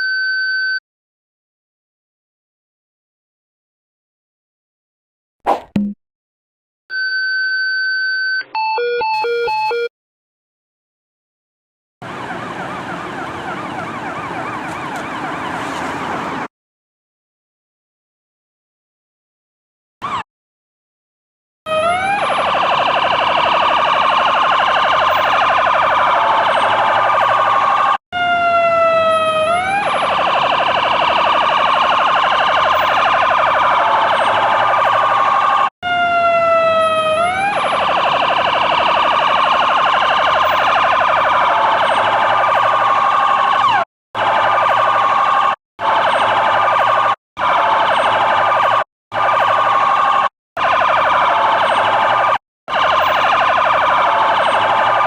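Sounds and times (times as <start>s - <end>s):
siren rising chirps: 12.0s - 16.5s, 21.7s - 55.0s.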